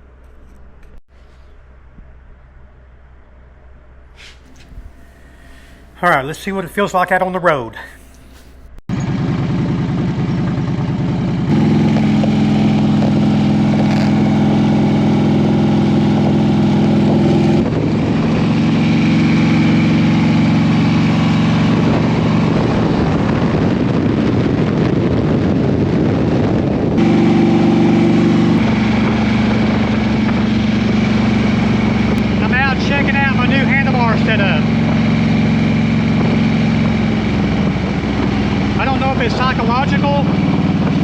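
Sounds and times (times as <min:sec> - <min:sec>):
motorcycle engine running: 0:08.6 - 0:41.0.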